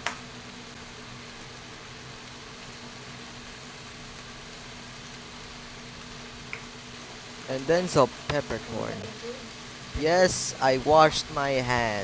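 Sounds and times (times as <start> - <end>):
chicken frying in oil: 0.0 - 12.0
low steady hum: 4.6 - 12.0.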